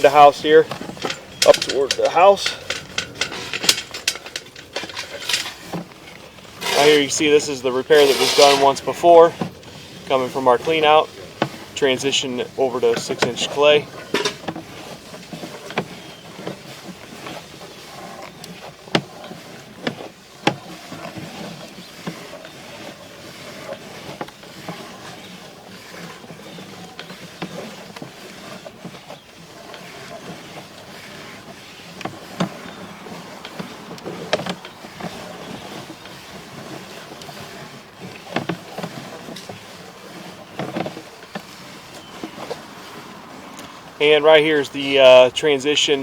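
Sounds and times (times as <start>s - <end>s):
steady mechanical running noise: 0.0s - 15.9s.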